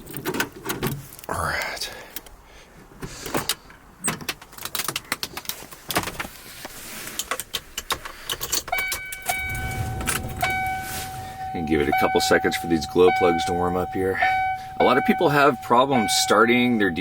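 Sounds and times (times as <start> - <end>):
truck door and keys clunking: 7.2 - 16.5
truck warning chime: 8.7 - 17.0.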